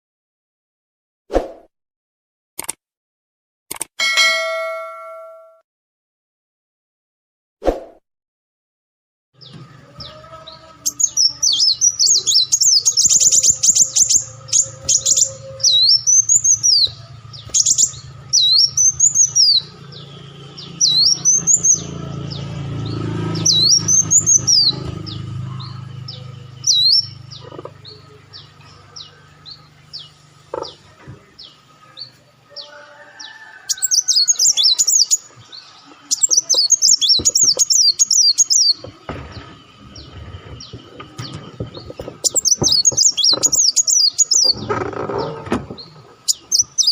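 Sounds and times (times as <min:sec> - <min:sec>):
sunbird chirping and trilling: 0:09.4 - 0:46.9.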